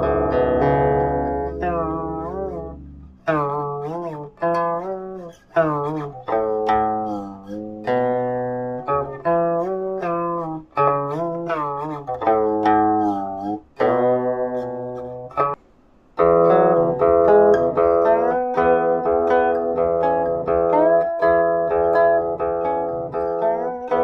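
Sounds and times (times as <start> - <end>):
zither plucked notes sliding: 0.0 - 15.6, 16.2 - 24.0.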